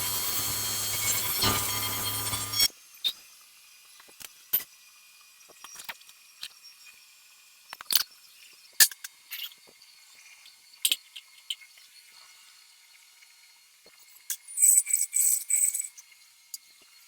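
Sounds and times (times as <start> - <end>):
welding arc buzz: 0.0 - 2.7.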